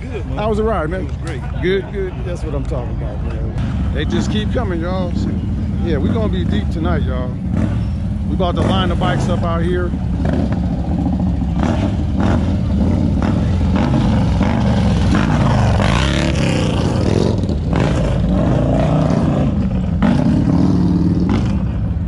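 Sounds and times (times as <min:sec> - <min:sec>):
motorcycle engines running: 0:00.0 - 0:22.0
motorcycle engine revving: 0:03.6 - 0:22.0.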